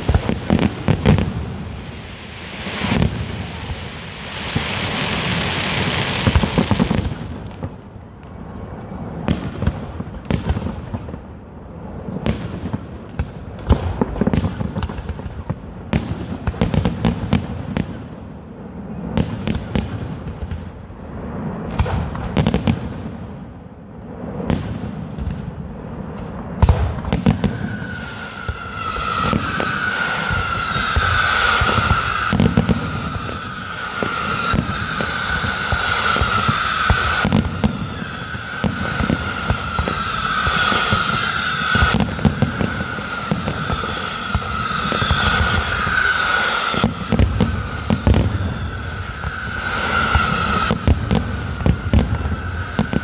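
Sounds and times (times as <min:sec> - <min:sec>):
fireworks bangs and crackles: 0:00.0 - 0:53.0
high whistling tone falling: 0:27.3 - 0:53.0.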